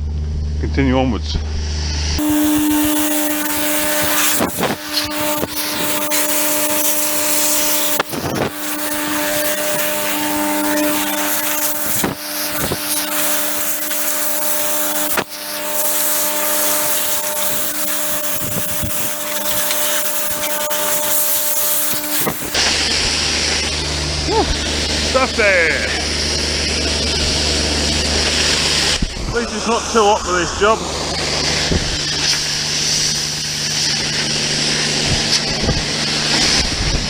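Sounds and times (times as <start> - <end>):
air blow gun hissing: 2.2 - 22.6
air compressor hum: 2.2 - 25.2.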